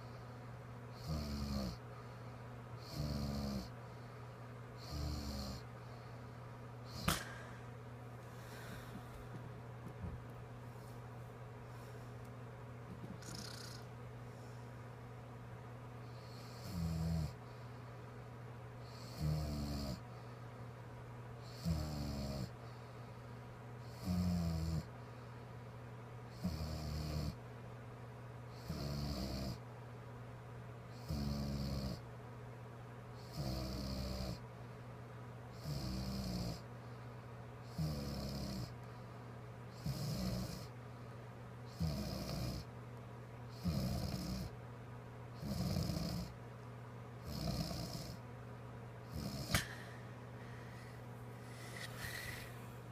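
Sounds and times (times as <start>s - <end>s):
constant low hum: 0.0s - 52.9s
woman snoring: 1.0s - 1.8s, 2.8s - 3.7s, 4.8s - 5.6s, 13.2s - 13.9s, 16.2s - 17.4s, 18.9s - 20.0s, 21.5s - 22.5s, 28.6s - 29.6s, 31.0s - 32.0s, 37.7s - 38.7s, 39.8s - 40.7s, 41.7s - 42.7s, 43.6s - 44.5s, 45.4s - 46.3s, 47.3s - 48.2s, 49.1s - 49.7s.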